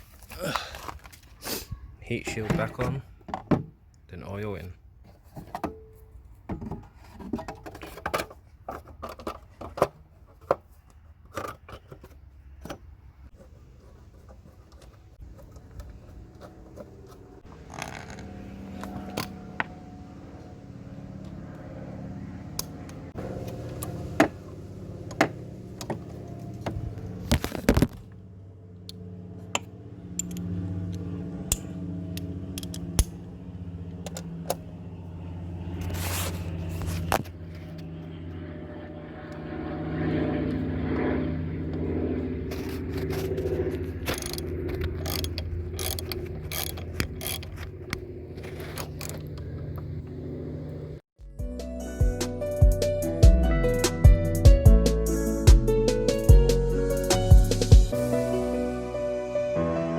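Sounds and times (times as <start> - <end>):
low vehicle engine hum: 11.8 - 59.9
metal tools clinking and scraping: 42.5 - 49.3.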